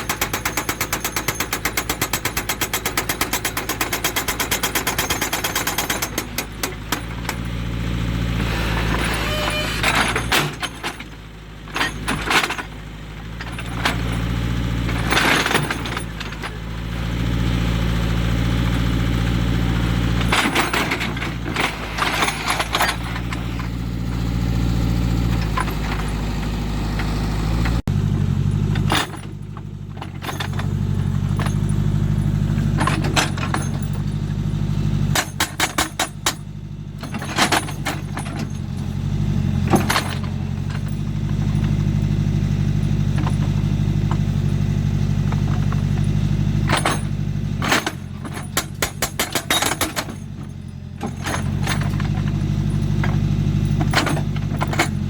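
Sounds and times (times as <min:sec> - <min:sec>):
backhoe diesel engine under load: 0:00.0 - 0:55.0
metal knocking against rock: 0:46.7 - 0:50.4.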